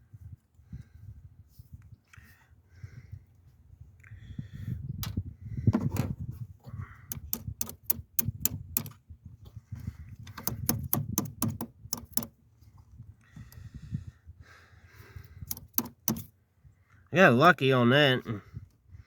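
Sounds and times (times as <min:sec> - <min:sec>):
handling thumps: 0:10.2 - 0:12.3, 0:15.5 - 0:16.3.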